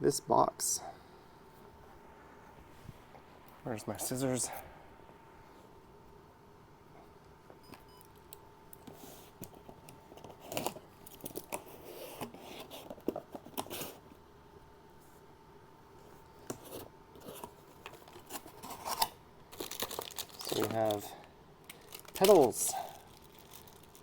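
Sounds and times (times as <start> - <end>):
cardboard and plastic rustling: 8.9 - 14.1, 16.4 - 24.0.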